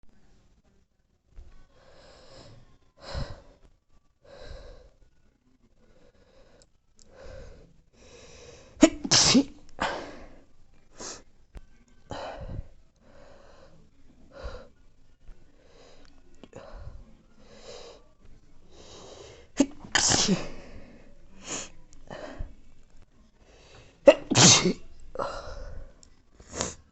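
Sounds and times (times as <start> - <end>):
person sneezing: 8.8 - 10.3, 19.6 - 20.8, 24.1 - 25.8
breaths and sniffs: 15.5 - 18.0, 18.6 - 22.8.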